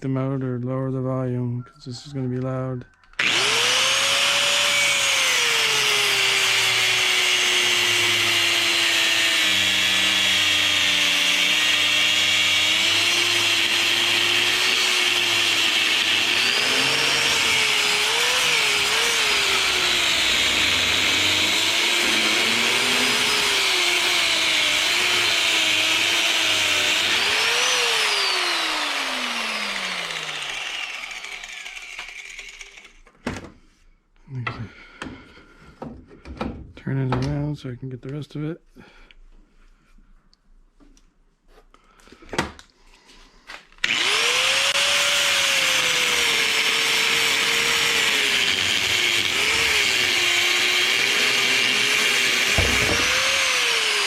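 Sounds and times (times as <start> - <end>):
metal cutting screech: 3.1 - 33.0, 43.8 - 54.0
power tool motor whining: 3.2 - 33.0, 43.8 - 54.0.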